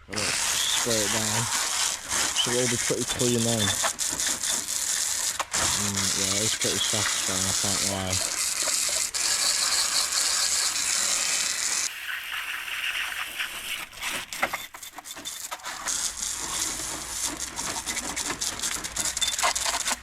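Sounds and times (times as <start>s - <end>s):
water spraying hiss: 9.4s - 13.8s
bike clicks and rattles: 14.4s - 20.0s.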